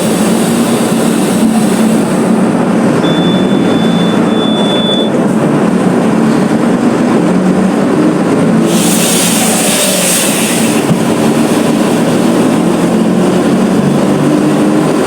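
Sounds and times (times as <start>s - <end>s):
bus diesel engine running: 0.0s - 15.0s
road and body rumble: 0.0s - 15.0s.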